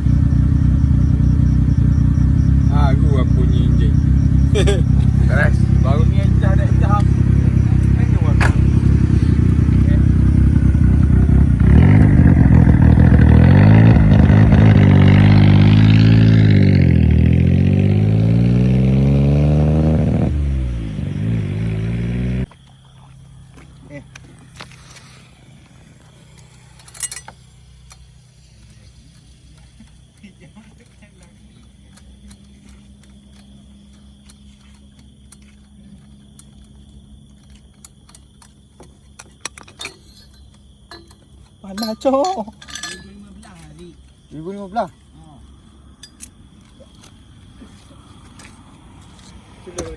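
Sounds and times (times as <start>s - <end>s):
low hum: 0.0s - 19.4s
car engine revving: 0.0s - 22.6s.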